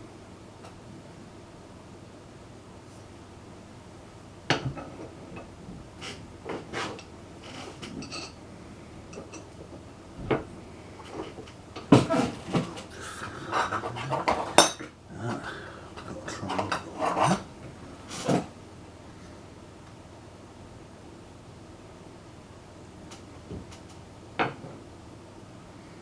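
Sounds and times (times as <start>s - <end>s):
metal files clinking and clattering: 11.2s - 14.8s.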